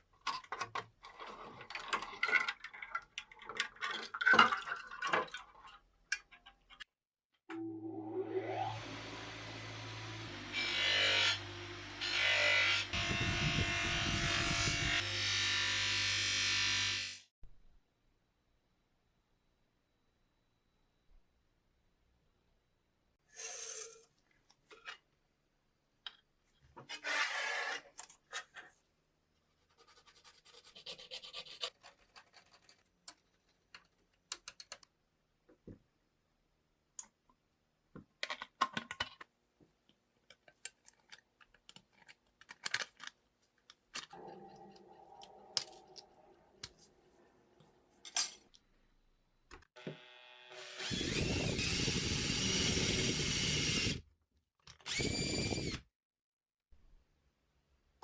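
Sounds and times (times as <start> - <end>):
scraping of small parts and tools: 0.2 - 6.9, 40.2 - 47.0
clicks and taps of small parts: 33.0 - 35.8
power tool motor running: 49.8 - 54.0.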